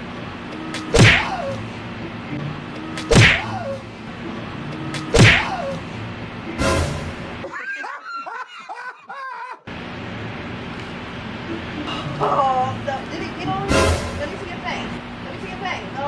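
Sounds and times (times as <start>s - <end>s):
loud wet slaps: 0.7s - 1.4s, 3.0s - 3.6s, 4.9s - 5.6s.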